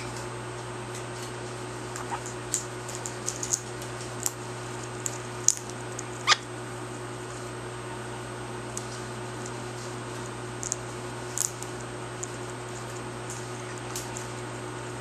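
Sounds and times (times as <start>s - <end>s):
steady low hum: 0.0s - 15.0s
parrot squeak: 6.2s - 6.5s.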